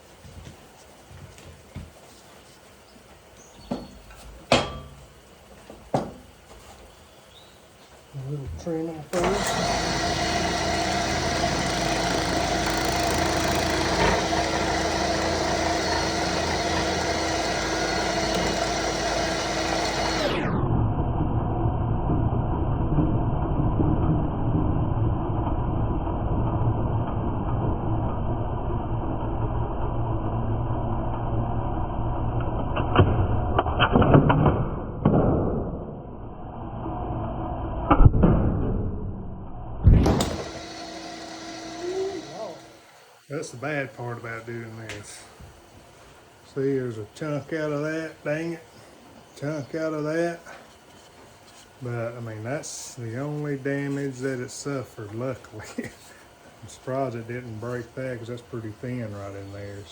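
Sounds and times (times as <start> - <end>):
lathe motor hum: 8.6 - 20.5, 40.0 - 48.5
tool cutting spinning wood: 8.6 - 20.6, 39.9 - 59.9
turning tool cutting wood: 9.1 - 20.5, 40.0 - 43.2.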